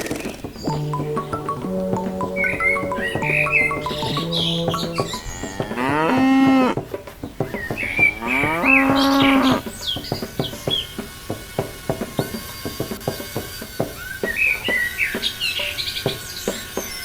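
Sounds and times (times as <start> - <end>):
light background music: 0.0 - 17.0
cow mooing: 3.2 - 6.8, 7.9 - 9.6.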